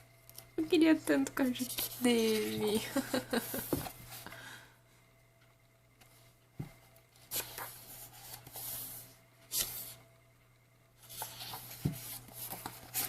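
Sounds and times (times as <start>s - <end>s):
paper pages swishing and rustling: 7.2s - 10.0s, 11.0s - 13.0s.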